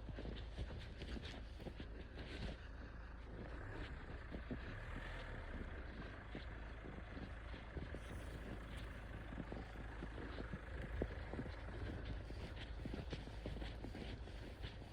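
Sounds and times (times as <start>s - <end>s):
car engine rumble: 0.0s - 14.9s
tyres crackling on road: 3.4s - 14.9s.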